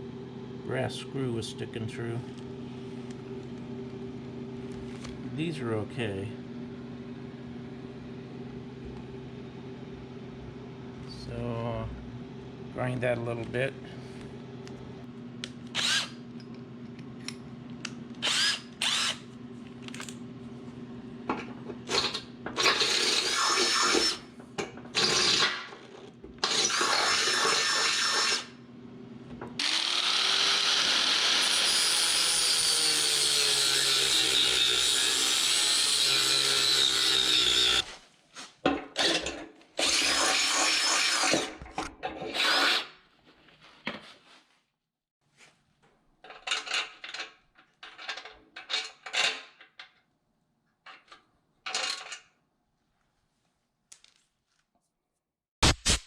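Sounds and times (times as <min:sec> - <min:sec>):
power grinder grinding steel: 0:18.2 - 0:19.2, 0:21.9 - 0:24.2, 0:26.4 - 0:28.5, 0:29.6 - 0:37.9, 0:39.0 - 0:41.5.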